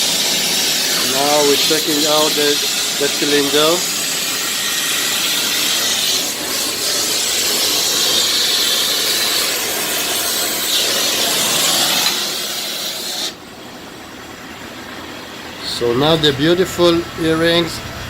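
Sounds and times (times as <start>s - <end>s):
rushing gas hiss: 0.0s - 13.4s.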